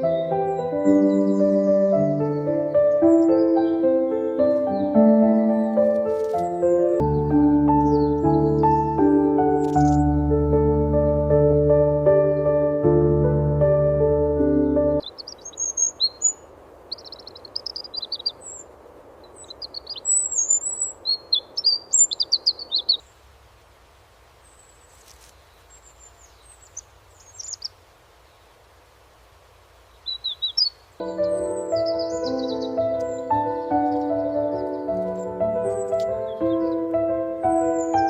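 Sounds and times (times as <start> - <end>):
small bird chirping: 0.0 - 10.1, 14.5 - 23.2, 24.4 - 28.5, 29.9 - 38.0
faint steady hiss: 15.0 - 38.0.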